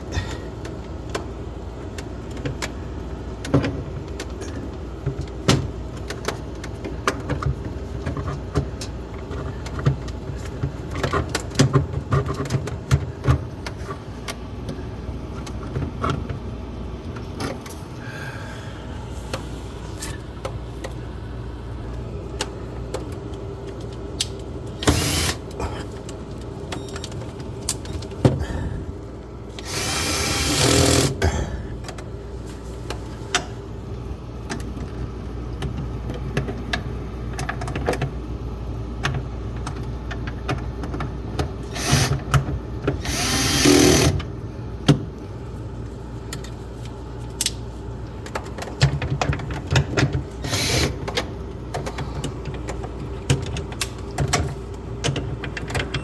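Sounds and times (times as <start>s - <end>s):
cordless drill running: 24.8s - 25.4s, 29.6s - 31.2s, 41.7s - 42.2s, 43.0s - 44.2s, 50.4s - 51.0s.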